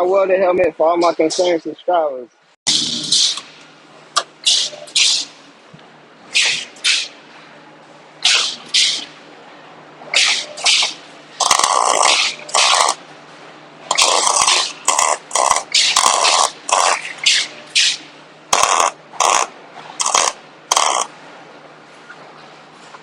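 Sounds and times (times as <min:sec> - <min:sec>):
welding arc crackle bursts: 0:02.7 - 0:03.5, 0:10.1 - 0:13.0, 0:13.9 - 0:21.1.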